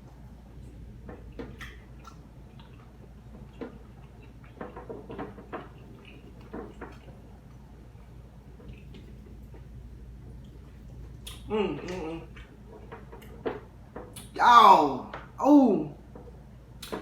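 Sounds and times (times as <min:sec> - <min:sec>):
chewing mouth clicks and smacks: 0:00.6 - 0:07.6, 0:08.6 - 0:09.7, 0:10.4 - 0:13.4, 0:14.1 - 0:14.4, 0:16.8 - 0:17.0.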